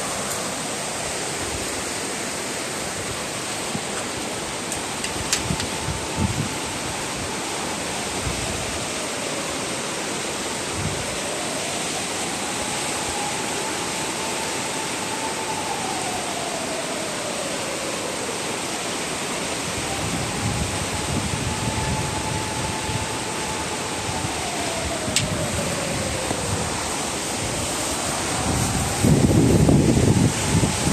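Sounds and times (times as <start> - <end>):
gusty wind on microphone: 5.0 - 8.9, 19.6 - 30.9.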